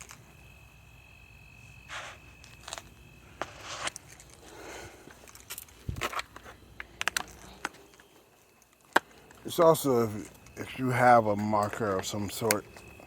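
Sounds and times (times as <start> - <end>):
scrapes and rustles: 1.9 - 8.2.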